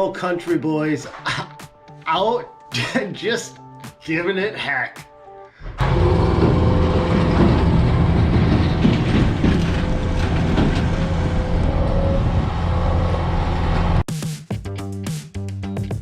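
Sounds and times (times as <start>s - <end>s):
rattling and clatter: 5.8s - 12.7s
vehicle engine droning: 5.8s - 14.1s.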